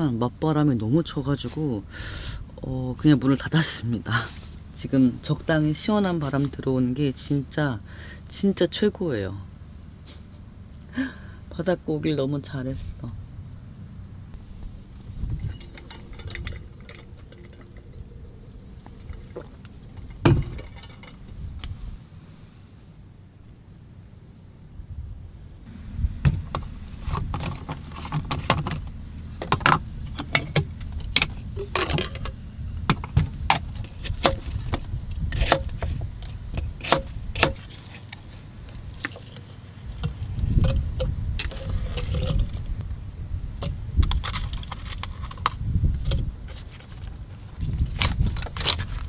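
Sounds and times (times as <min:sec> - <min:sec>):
low rumble: 0:09.3 - 0:22.5, 0:23.9 - 0:37.4.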